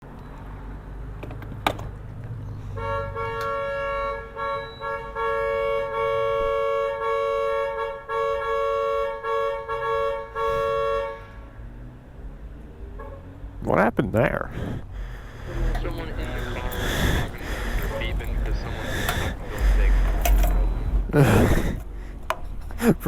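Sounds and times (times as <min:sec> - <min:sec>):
car horn honking: 0:02.8 - 0:11.7, 0:13.0 - 0:13.4, 0:14.9 - 0:23.0.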